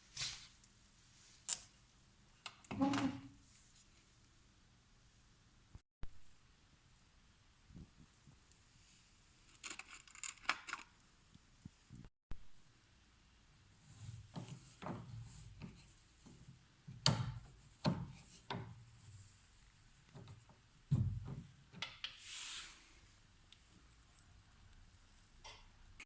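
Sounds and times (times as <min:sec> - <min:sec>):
knocks and clicks of parts: 0:16.9 - 0:18.8.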